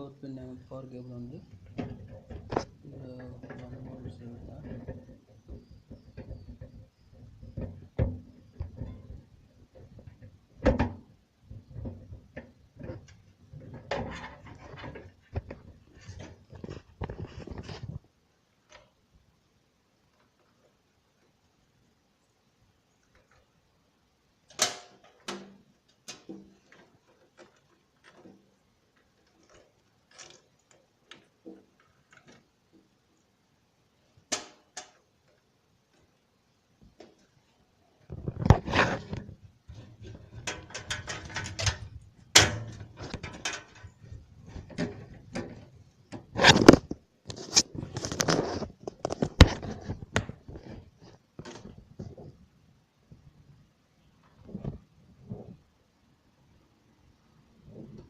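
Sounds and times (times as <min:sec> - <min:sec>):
rattle: 0:24.5 - 0:32.5, 0:38.0 - 0:46.9
computer parts clicking and knocking: 0:38.1 - 0:51.9.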